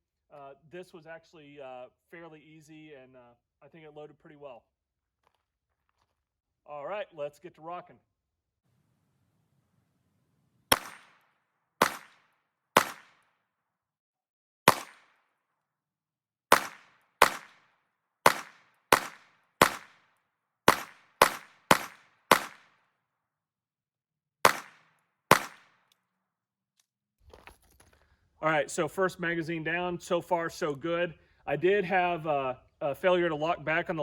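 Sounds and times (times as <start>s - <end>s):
pistol shots: 10.7s - 13.2s, 14.7s - 15.2s, 16.5s - 20.1s, 20.7s - 22.8s, 24.4s - 25.8s.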